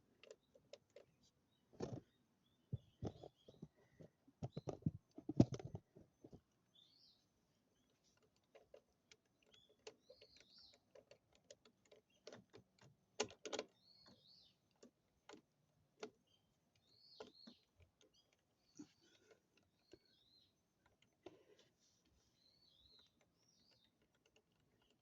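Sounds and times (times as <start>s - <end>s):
small birds chirping: 0.0s - 25.0s
light clicks and knocks: 1.8s - 6.5s, 8.0s - 20.2s.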